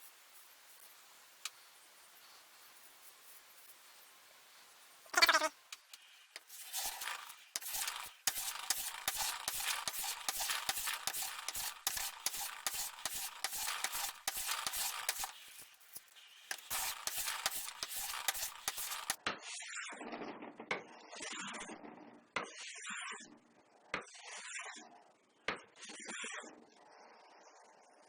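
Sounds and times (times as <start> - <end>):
plane blade scraping ticks: 5.3 - 15.7, 16.5 - 19.2.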